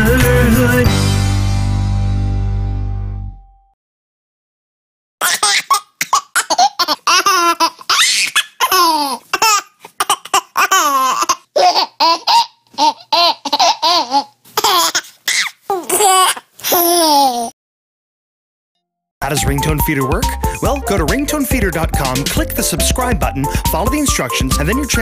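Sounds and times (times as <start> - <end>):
baby laughing: 5.2 - 17.5.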